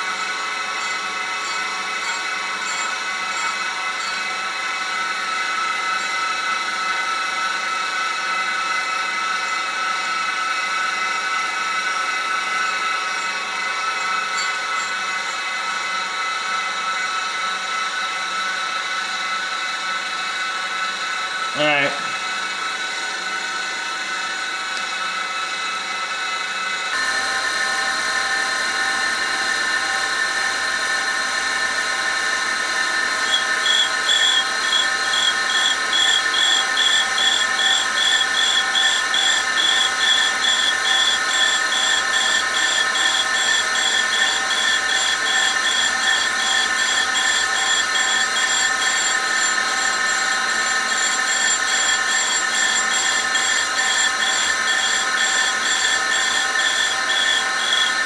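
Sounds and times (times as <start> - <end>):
grinder spindle whine: 0.0 - 58.0.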